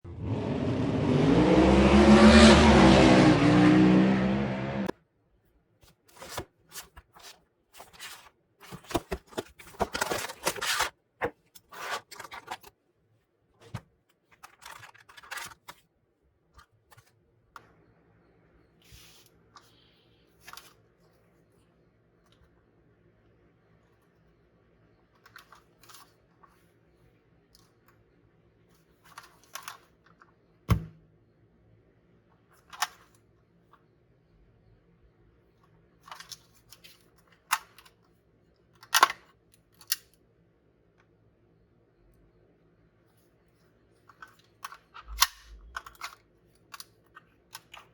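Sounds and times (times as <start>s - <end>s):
packaging rustles and clicks: 6.1s - 12.7s
packaging rustling and tearing: 7.9s - 10.9s.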